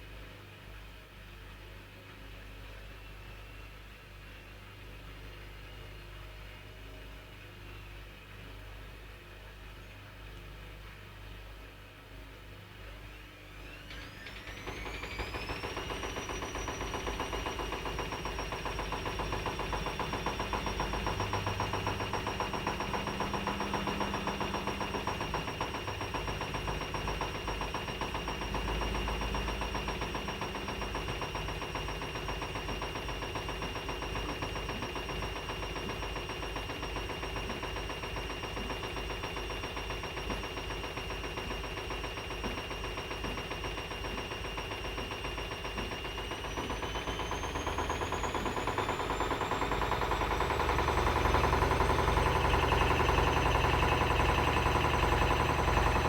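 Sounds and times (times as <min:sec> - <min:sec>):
washing machine motor whining: 0:13.7 - 0:56.0
rapid knocking inside machine: 0:14.2 - 0:56.0.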